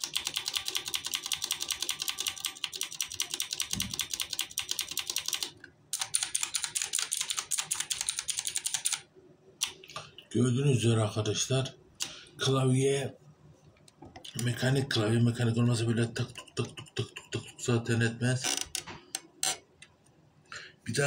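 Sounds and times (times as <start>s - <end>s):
clicky mechanical keyboard typing: 0.0s - 9.0s.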